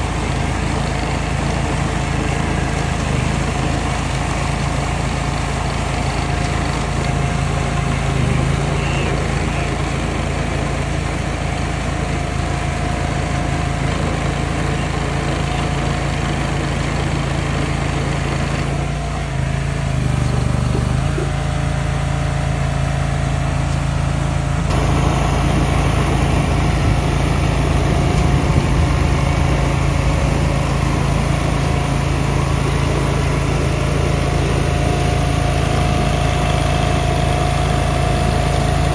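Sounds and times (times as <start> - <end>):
machinery engines humming: 0.0 - 38.9.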